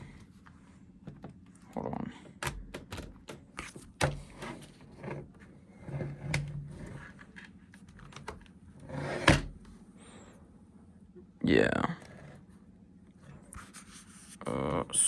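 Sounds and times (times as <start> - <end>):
plastic parts clicking and knocking: 1.0 - 1.5, 2.2 - 4.8.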